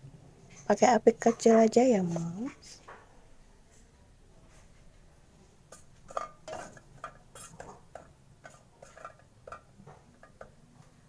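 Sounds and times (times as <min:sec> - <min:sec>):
garlic clicking in a pan: 0:05.7 - 0:10.6.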